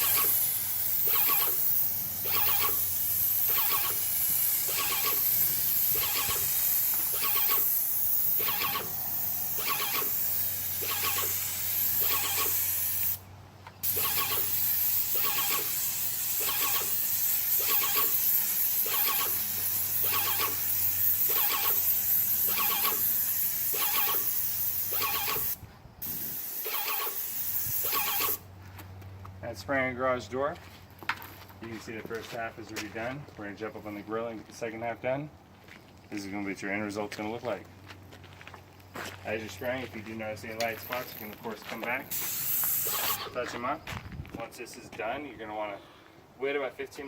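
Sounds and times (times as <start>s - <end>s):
paint sprayer hissing: 0.0s - 13.2s, 13.8s - 28.4s, 40.6s - 43.5s
repeating squeal: 0.0s - 13.2s, 13.8s - 28.4s, 42.1s - 43.4s.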